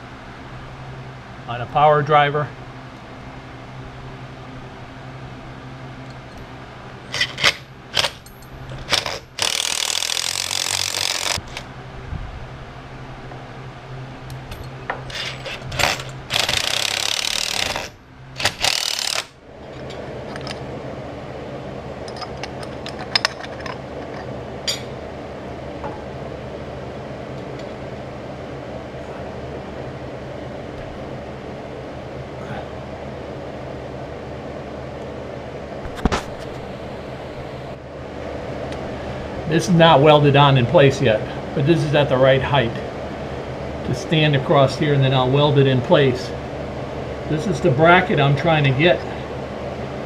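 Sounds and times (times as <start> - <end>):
steady low hum: 0.0 - 50.0
power driver driving screws: 8.8 - 11.7, 15.1 - 19.3.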